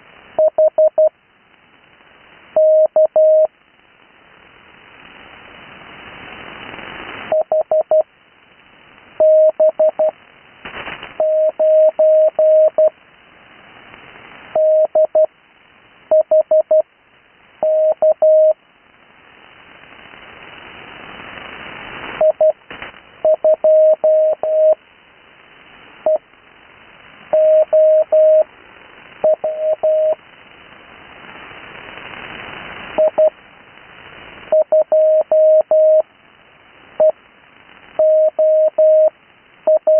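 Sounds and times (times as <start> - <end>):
radio band hiss: 0.0 - 39.9
morse code beeps: 9.2 - 10.1, 11.2 - 12.9, 14.6 - 15.3, 23.3 - 24.8, 27.4 - 28.4, 29.2 - 30.2, 33.0 - 33.3, 34.5 - 36.0, 38.0 - 39.1, 39.7 - 39.9.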